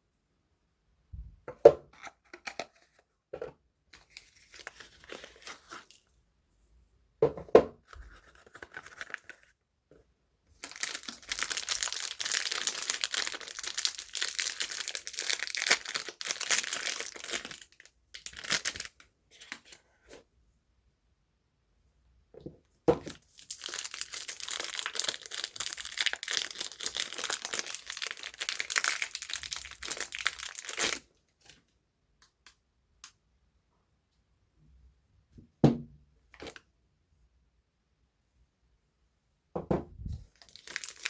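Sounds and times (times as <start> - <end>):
wrapping tearing and crinkling: 4.0 - 6.1, 8.0 - 9.5, 10.6 - 19.8, 23.0 - 31.6, 40.3 - 41.0
knocks on soap packaging: 7.2 - 7.8, 35.6 - 36.0, 39.6 - 39.9
light rustling of wrapping: 40.0 - 41.0.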